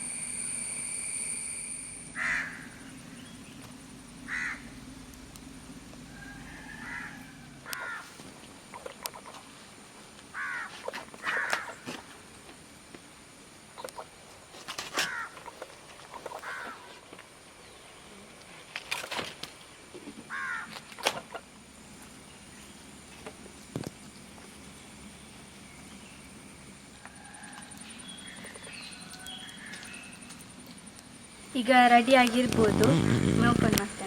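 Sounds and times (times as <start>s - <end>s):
faint background noise: 0.0s - 34.0s
bird calling: 1.9s - 12.1s, 14.8s - 17.1s, 20.3s - 34.0s.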